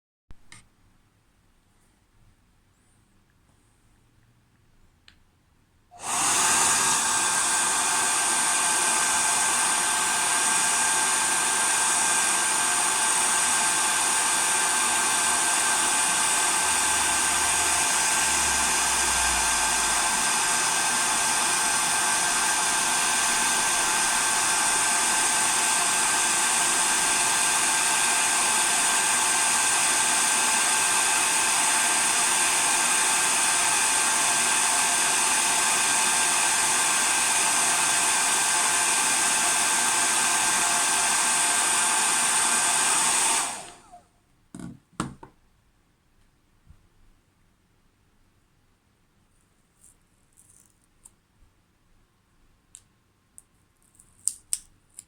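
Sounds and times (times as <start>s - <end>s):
hair dryer running: 5.9s - 44.0s.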